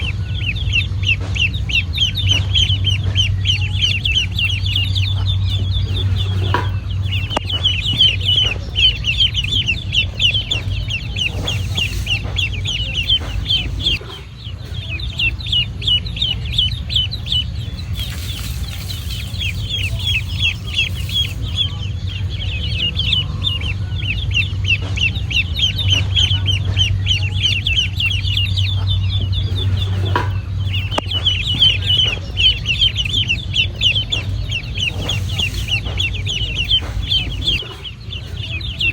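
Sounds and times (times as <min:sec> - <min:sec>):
ducklings peeping: 0:00.0 - 0:38.9
steady low hum: 0:00.0 - 0:38.9
scattered taps: 0:01.0 - 0:14.0.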